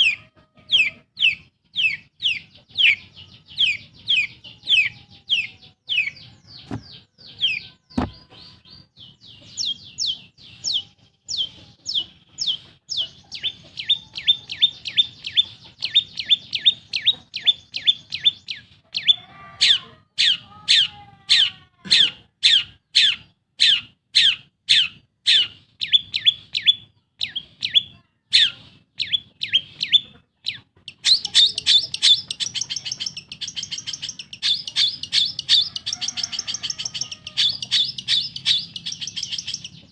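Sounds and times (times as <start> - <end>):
rapid chattering bird trill: 0.0 - 39.9
bird singing sharp chirps: 22.5 - 39.9.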